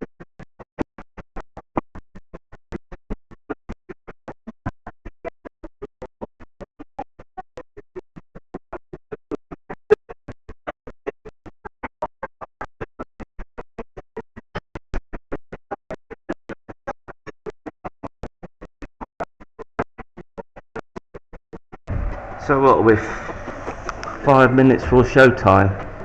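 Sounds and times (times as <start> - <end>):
music breaking up in pulses: 21.9 - 26.0.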